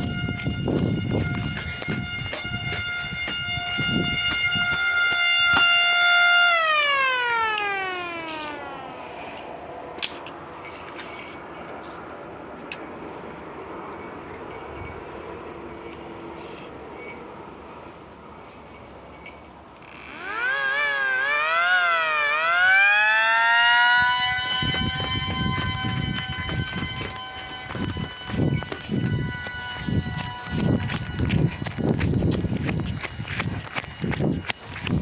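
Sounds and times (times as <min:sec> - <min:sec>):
motor-driven siren: 0:00.0 - 0:09.8, 0:19.8 - 0:35.0.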